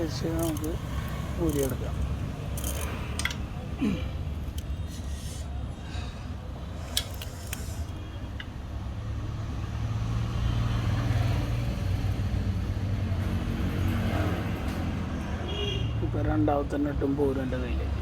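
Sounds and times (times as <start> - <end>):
box spanner metallic clicks: 2.5 - 3.5.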